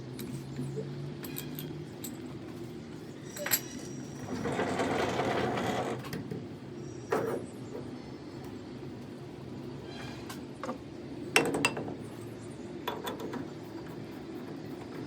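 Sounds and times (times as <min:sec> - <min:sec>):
metal parts clinking and rattling: 0:01.2 - 0:02.4, 0:03.2 - 0:05.6.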